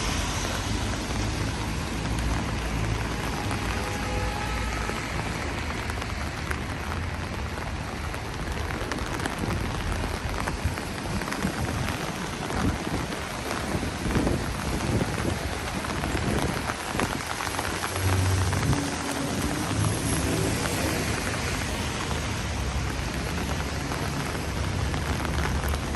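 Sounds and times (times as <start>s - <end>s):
rain falling on street: 0.0s - 25.9s.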